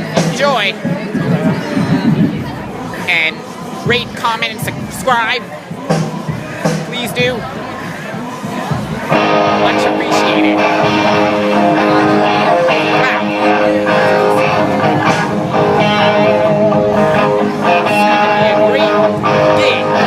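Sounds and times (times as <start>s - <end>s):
live band music through speakers: 0.0s - 20.0s
amplified guitars with wavering notes: 9.0s - 20.0s.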